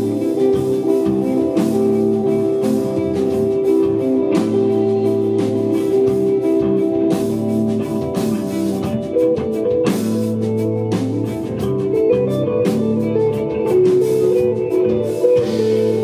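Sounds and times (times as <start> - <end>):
bass guitar: 0.0 - 16.0
drum and cymbal hits: 0.0 - 16.0
electric guitar: 0.0 - 16.0.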